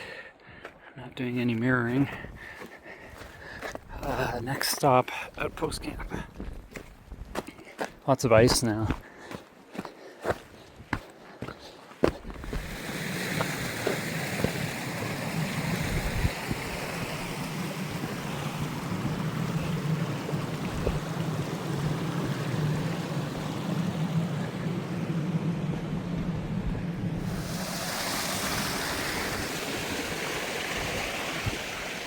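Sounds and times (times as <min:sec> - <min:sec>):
footsteps on icy ground: 0:01.5 - 0:14.8
creek rushing: 0:11.4 - 0:32.0.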